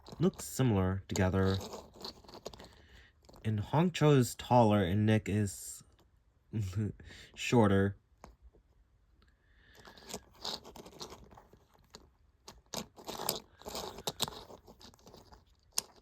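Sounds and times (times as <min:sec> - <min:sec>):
toy figures clicking and scraping: 0:00.0 - 0:03.7, 0:09.6 - 0:16.0.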